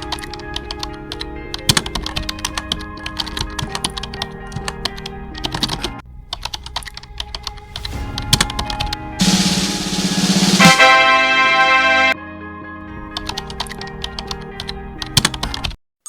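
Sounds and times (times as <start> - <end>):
keyboard typing clicks: 0.0 - 7.9, 13.2 - 15.8
background music: 0.0 - 15.8
loud hiss with low buzz: 9.2 - 11.3.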